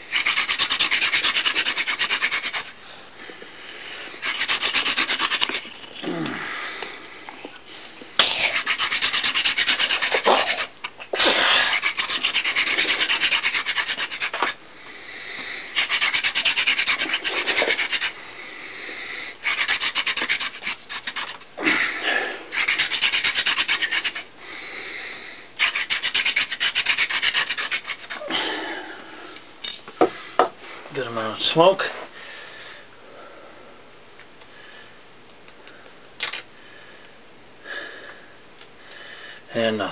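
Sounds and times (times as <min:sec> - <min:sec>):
hand drill spindle rasping on wood: 0:08.5 - 0:14.6.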